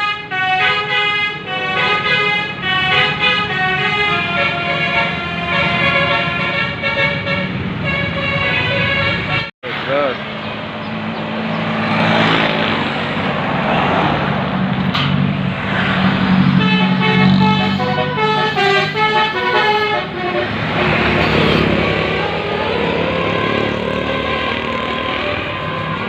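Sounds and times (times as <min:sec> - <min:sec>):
musical air horn tune: 0:00.0 - 0:09.5, 0:16.6 - 0:21.0
bus engine running: 0:00.0 - 0:26.0.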